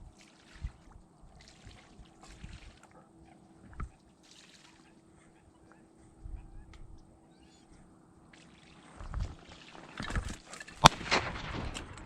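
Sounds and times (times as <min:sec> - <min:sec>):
shotgun shot with echo: 0:10.8 - 0:12.0.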